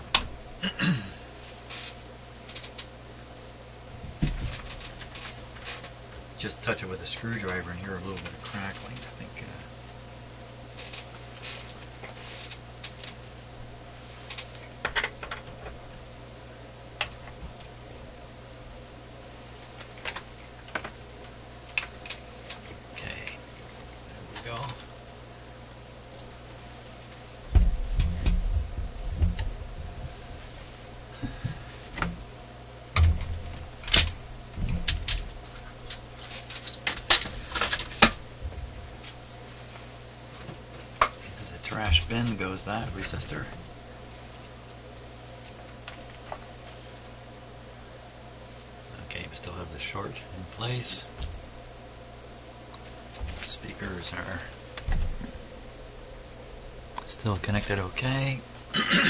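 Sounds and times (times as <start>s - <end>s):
steady low hum: 0.0s - 59.0s
low thumps: 27.5s - 30.3s.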